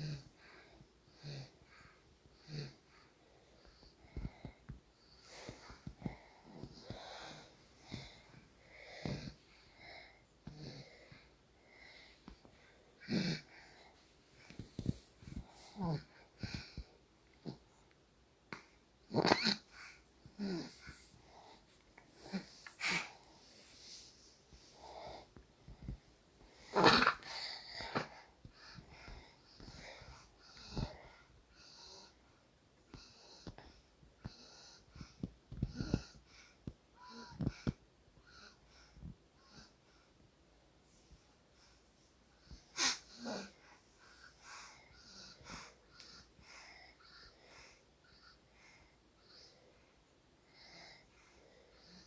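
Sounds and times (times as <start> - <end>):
soft snoring: 2.4 - 17.8, 42.5 - 48.4.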